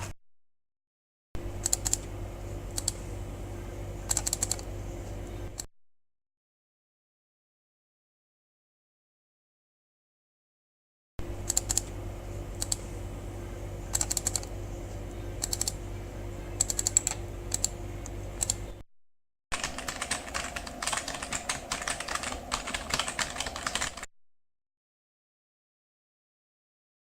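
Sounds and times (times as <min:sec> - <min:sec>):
steady low hum: 0:01.4 - 0:05.7, 0:11.2 - 0:18.8.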